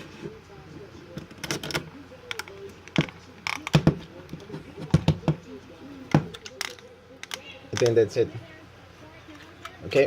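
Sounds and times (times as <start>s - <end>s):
plastic toy parts clicking: 1.2s - 3.9s, 6.1s - 8.0s.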